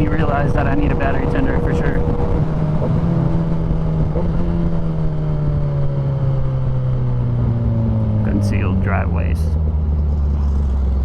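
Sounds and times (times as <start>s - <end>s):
wind noise: 0.0s - 8.9s
motorcycle engine running: 0.0s - 11.0s.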